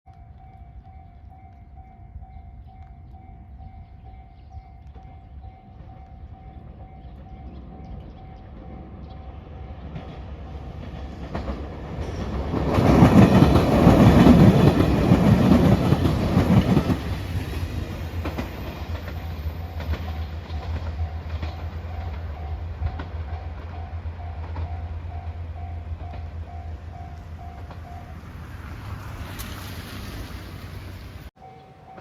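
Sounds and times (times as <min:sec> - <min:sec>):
crossing warning bell ringing: 0:00.1 - 0:10.0, 0:13.2 - 0:28.8, 0:31.3 - 0:32.0
train passing: 0:00.1 - 0:32.0.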